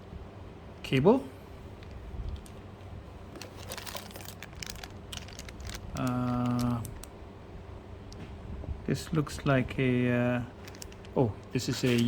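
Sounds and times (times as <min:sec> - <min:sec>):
flat-pitched hum: 0:00.0 - 0:12.0
packaging crinkling: 0:03.3 - 0:07.1, 0:10.6 - 0:12.0.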